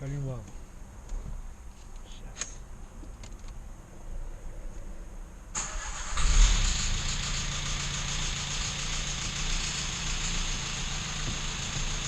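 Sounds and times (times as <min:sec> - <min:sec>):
car engine idling with knock: 0:06.9 - 0:12.0.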